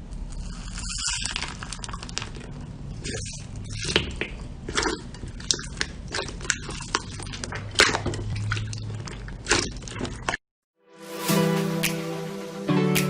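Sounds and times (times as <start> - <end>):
slime squishing and popping: 0.4 - 10.4.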